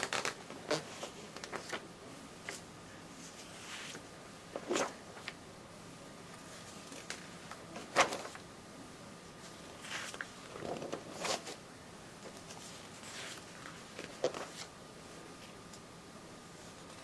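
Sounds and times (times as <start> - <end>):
paper pages rustling: 0.0 - 2.6, 3.2 - 5.4, 6.6 - 8.4, 9.4 - 11.6, 12.2 - 14.7.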